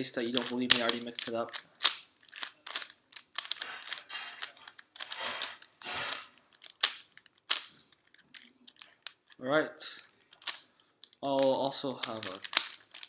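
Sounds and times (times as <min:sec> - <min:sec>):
puzzle cube plastic clicks: 0:00.1 - 0:13.0
sharp clicks: 0:10.0 - 0:13.0.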